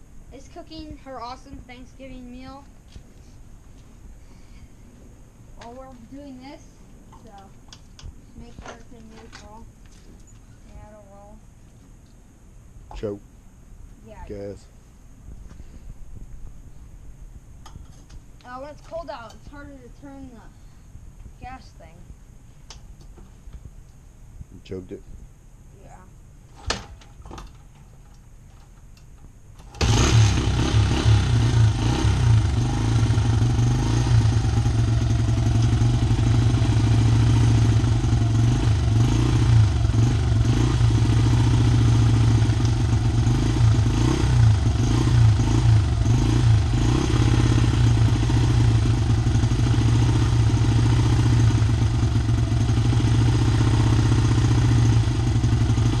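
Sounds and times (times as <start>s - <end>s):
small engine idling fast: 29.8s - 56.0s.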